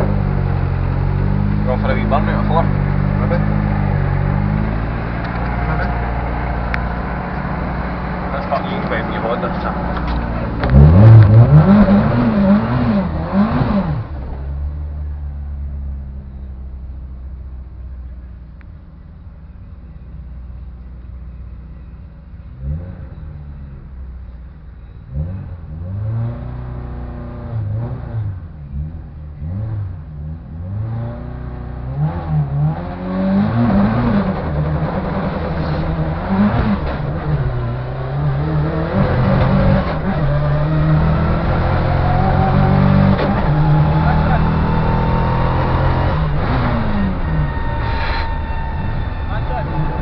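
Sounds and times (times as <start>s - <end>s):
misfiring car engine revving: 0.0s - 14.4s, 25.1s - 50.0s.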